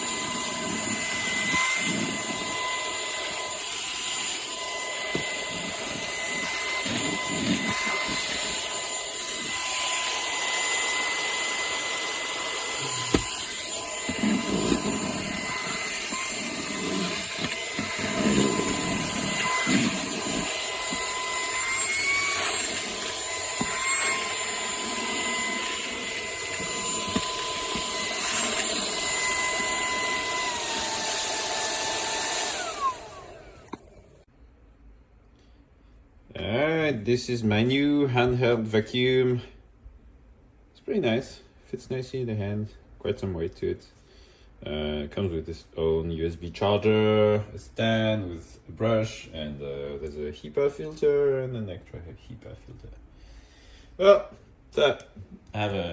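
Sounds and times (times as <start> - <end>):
handheld vacuum motor whining: 0.0 - 34.3.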